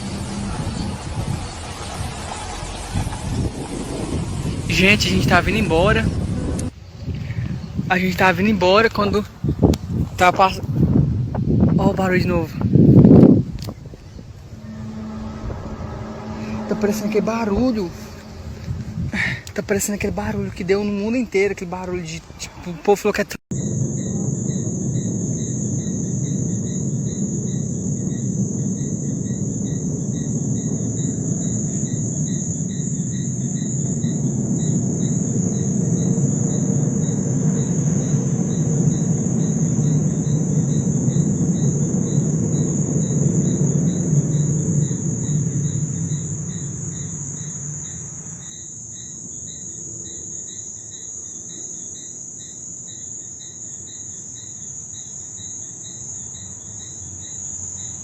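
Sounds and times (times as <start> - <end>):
low loud rumble from the sky: 0.0 - 20.9, 23.5 - 51.6
crickets chirping: 0.0 - 58.0.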